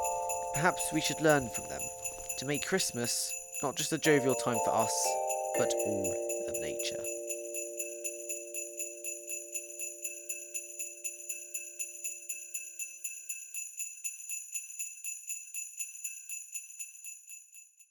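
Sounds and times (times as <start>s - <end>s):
held chord: 0.0s - 11.0s
sleigh bells shaken: 0.0s - 17.6s.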